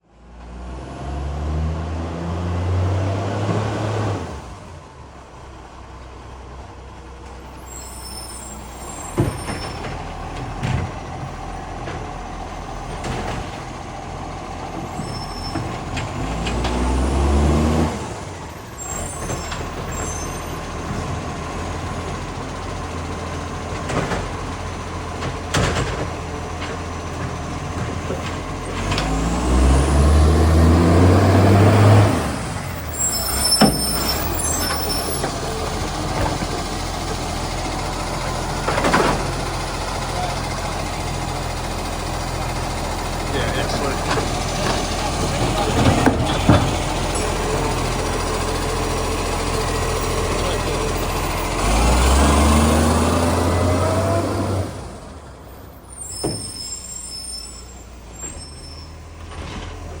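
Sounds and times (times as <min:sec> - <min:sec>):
garbage truck diesel engine revving: 0:00.2 - 1:00.0
air brake hisses and bangs: 0:56.0 - 0:58.8.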